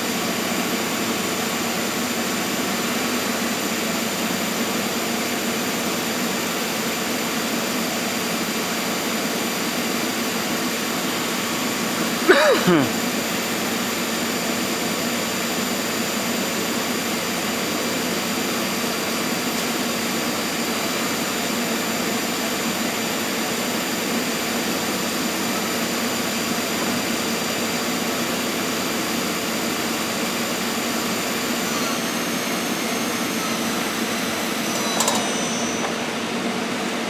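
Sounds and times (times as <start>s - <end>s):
lathe whirring and hissing: 29.6s - 37.0s
high whines: 31.6s - 36.7s.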